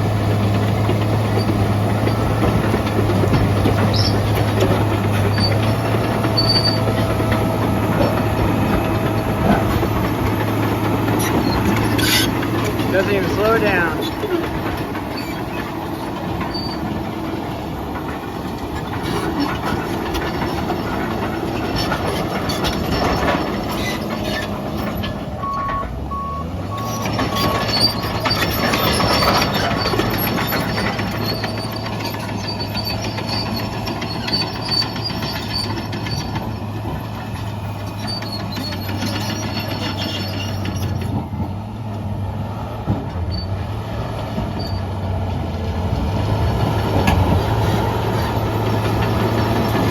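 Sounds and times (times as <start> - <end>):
steel tracks clattering: 0.0 - 26.1, 26.8 - 44.8, 46.0 - 49.9
dozer diesel engine under load: 0.0 - 49.9
short beeps: 25.4 - 27.5.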